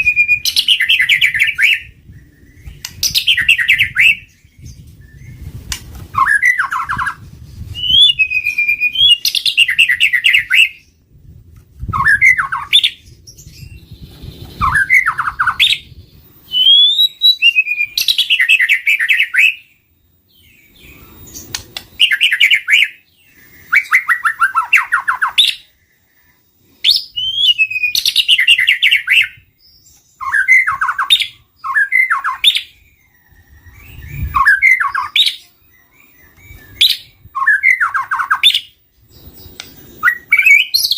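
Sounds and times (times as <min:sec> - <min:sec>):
bird singing whistles and trills: 0:00.0 - 0:11.1, 0:11.8 - 0:40.9.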